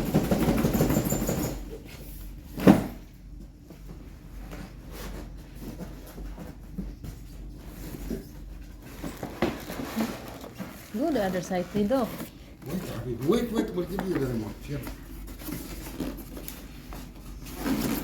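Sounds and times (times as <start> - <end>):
soft taps and rustles: 13.8 - 17.4.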